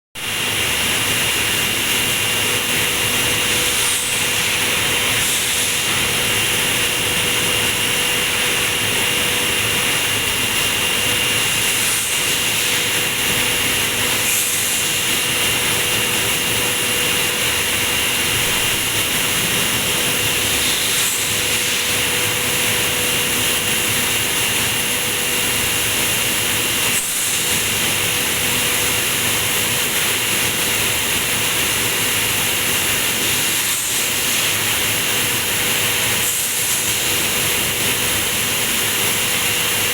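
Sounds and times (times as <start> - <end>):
washing machine running: 0.2 - 39.9.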